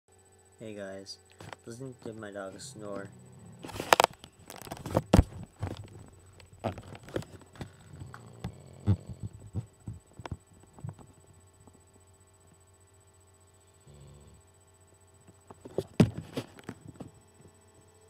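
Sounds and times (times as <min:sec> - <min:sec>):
dog snoring: 0:02.4 - 0:04.6, 0:07.6 - 0:09.7, 0:13.7 - 0:14.5.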